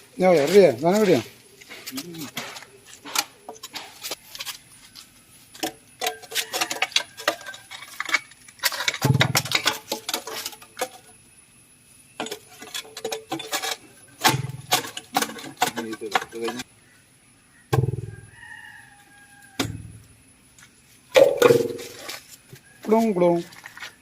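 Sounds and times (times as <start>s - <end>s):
metal clinking and knocking: 5.5s - 11.2s, 12.1s - 16.7s, 21.2s - 22.2s.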